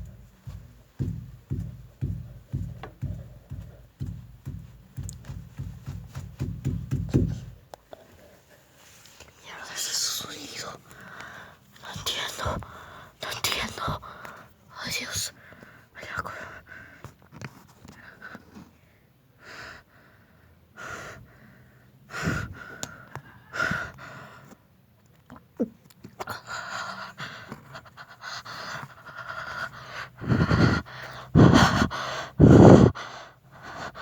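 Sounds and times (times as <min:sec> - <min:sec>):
heavy rasping breathing: 0:26.3 - 0:34.0
breath blasts on microphone: 0:31.4 - 0:32.9.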